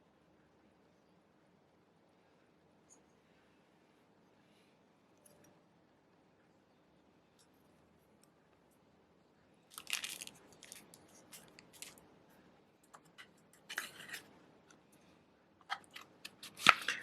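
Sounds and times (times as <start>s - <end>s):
razors and packaging handled: 9.7s - 12.0s, 12.9s - 14.3s, 15.6s - 17.0s.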